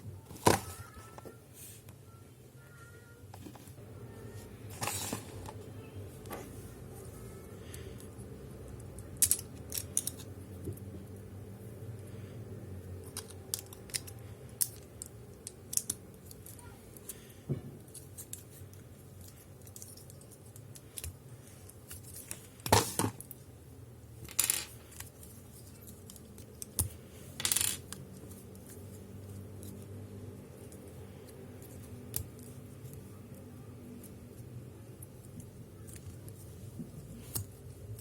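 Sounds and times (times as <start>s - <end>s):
plastic toy clicks and snaps: 13.0s - 16.6s.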